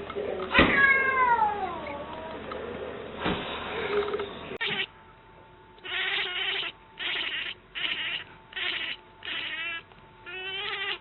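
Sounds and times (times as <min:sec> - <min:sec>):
cat meowing: 0:00.6 - 0:02.1, 0:04.6 - 0:04.9, 0:05.8 - 0:11.0.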